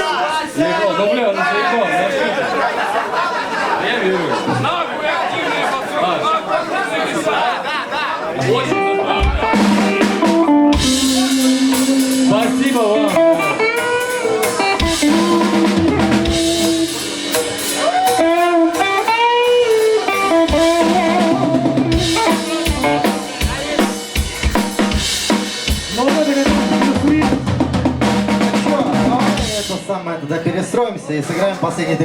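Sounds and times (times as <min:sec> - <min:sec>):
guitar with bending notes: 0:08.4 - 0:25.2
drum kit: 0:08.6 - 0:29.9.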